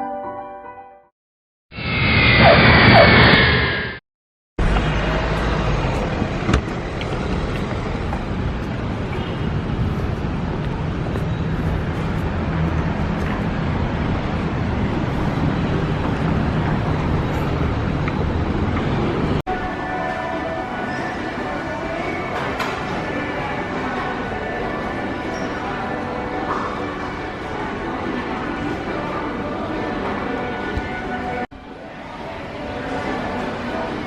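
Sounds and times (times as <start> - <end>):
traffic road rumble: 4.6 - 19.4.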